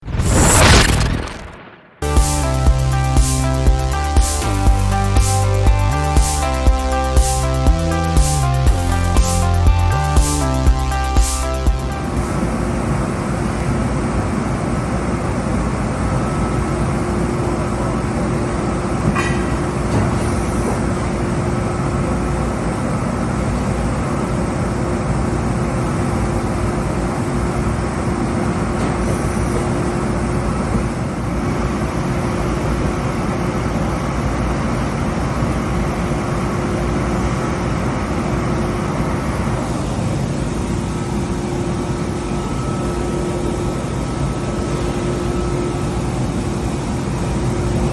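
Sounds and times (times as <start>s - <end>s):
machining center humming: 0.0s - 19.9s, 34.8s - 47.9s.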